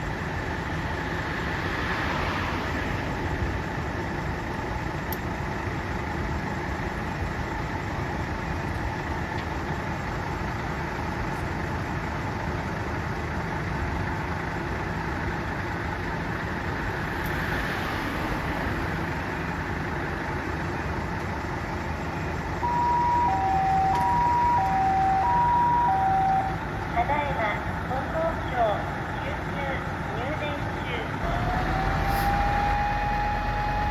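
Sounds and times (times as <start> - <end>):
vehicles idling: 0.0 - 33.9
two-tone ambulance siren: 22.6 - 26.7, 30.6 - 33.9.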